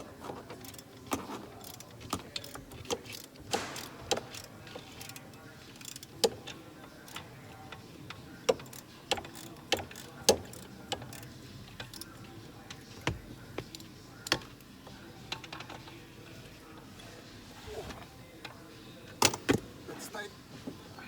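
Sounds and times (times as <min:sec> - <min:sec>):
ratchet clicking on bolt: 0:01.6 - 0:07.8, 0:08.4 - 0:12.8.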